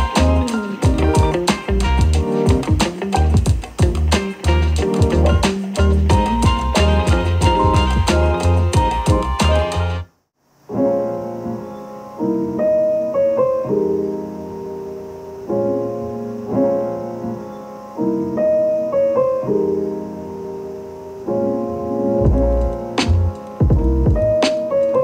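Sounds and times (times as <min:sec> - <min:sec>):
gentle piano chords: 0:00.0 - 0:09.9, 0:10.7 - 0:25.0
deep bass: 0:00.0 - 0:10.0, 0:22.2 - 0:24.4
music from a speaker: 0:00.0 - 0:10.1, 0:22.1 - 0:25.0.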